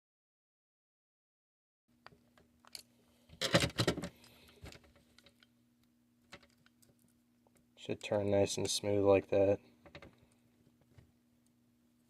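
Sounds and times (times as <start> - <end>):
faint steady hum: 1.9 - 12.0.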